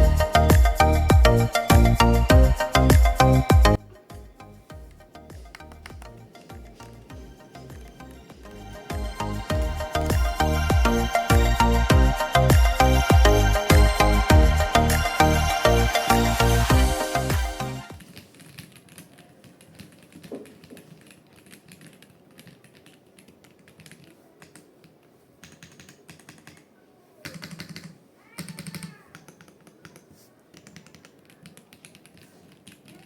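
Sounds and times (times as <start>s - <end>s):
keyboard typing clicks: 4.8s - 11.5s, 25.4s - 33.0s.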